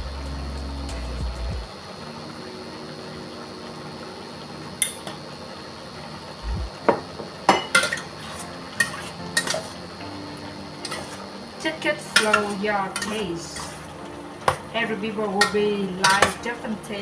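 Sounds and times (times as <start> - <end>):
utensil clinking against pan: 12.2 - 13.8, 15.4 - 16.4.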